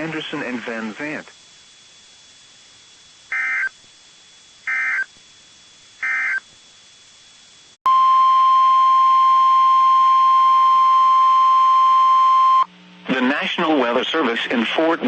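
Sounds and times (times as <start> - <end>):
steady warning alarm tone: 3.3 - 3.8, 4.6 - 5.1, 6.0 - 6.5
warbling data tones: 3.3 - 3.8, 4.6 - 5.1, 6.0 - 6.4.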